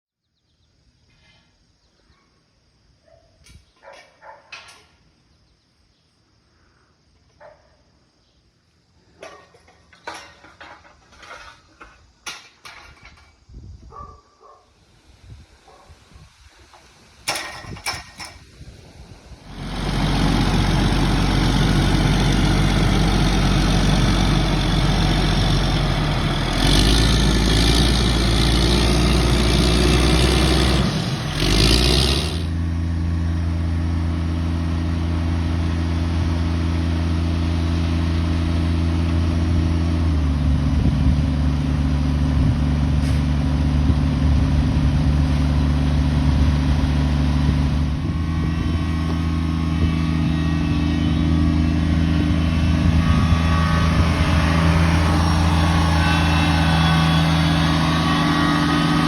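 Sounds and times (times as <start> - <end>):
engine running: 16.7 - 59.0.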